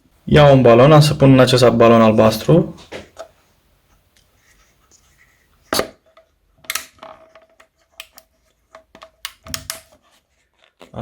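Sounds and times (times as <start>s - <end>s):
plastic clicks and knocks: 6.6s - 10.0s.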